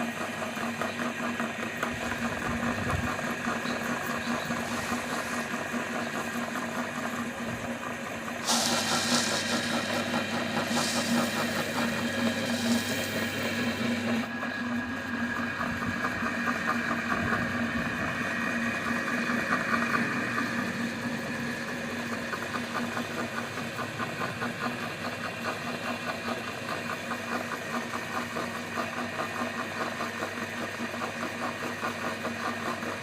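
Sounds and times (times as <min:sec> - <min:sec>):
meat grinder motor humming: 0:00.0 - 0:33.0
grinder crushing candies: 0:08.4 - 0:14.0.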